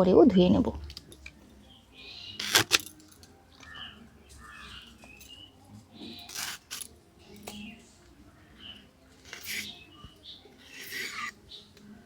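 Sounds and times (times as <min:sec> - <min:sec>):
birds chirping: 0:00.1 - 0:06.5, 0:07.2 - 0:12.0
sharp crisp stalk handling sounds: 0:02.4 - 0:03.0, 0:06.0 - 0:07.6, 0:09.2 - 0:09.8, 0:10.6 - 0:11.4.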